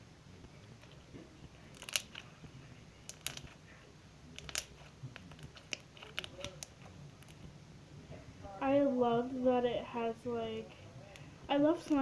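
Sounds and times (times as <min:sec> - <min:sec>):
slime crackling and popping: 0:01.6 - 0:02.3, 0:03.0 - 0:03.6, 0:04.3 - 0:07.4.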